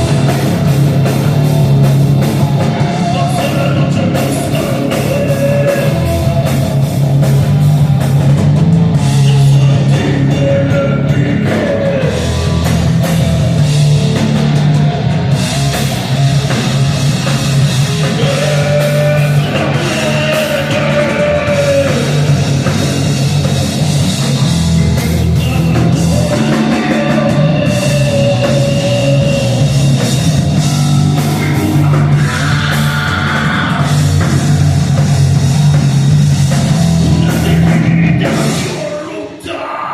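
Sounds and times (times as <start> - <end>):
live heavy rock band: 0.0 - 39.9
sustained guitar melody: 12.0 - 38.3.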